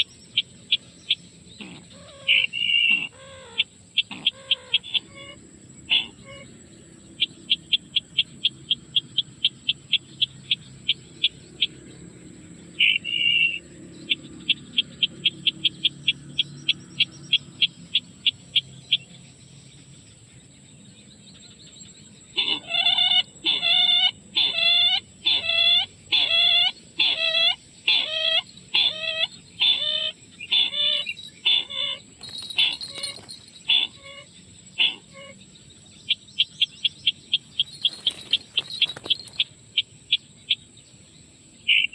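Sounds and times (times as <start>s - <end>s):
bird high pips: 27.9s - 35.0s, 37.4s - 39.5s.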